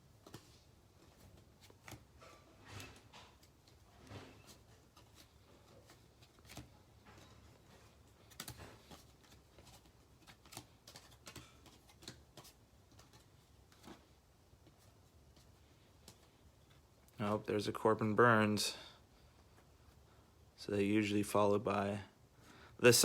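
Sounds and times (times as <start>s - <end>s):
trading cards clicking and sliding: 0.2s - 16.8s.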